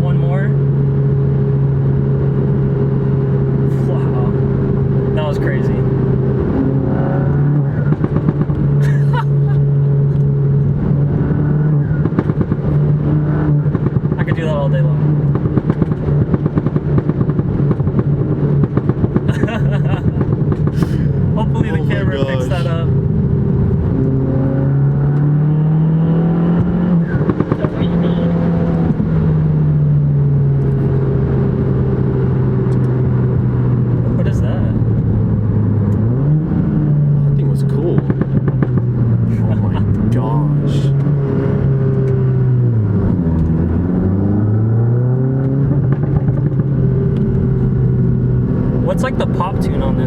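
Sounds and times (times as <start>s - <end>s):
car engine running under load: 0.0s - 50.0s
exhaust cracks and pops: 7.5s - 8.9s, 11.8s - 12.9s, 13.6s - 22.4s, 26.6s - 28.0s, 32.6s - 33.1s, 37.3s - 41.2s, 43.2s - 43.8s, 45.4s - 50.0s
rapid engine chatter: 19.3s - 22.9s.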